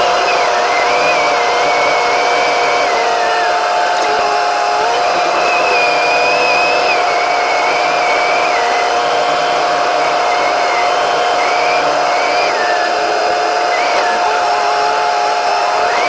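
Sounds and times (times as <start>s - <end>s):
grooming machine running: 0.0s - 16.0s.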